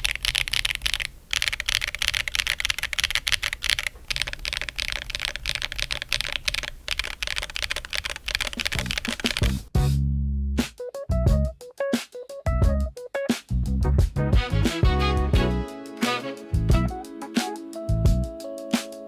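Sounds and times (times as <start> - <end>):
mechanical keyboard typing: 0.0 - 9.7.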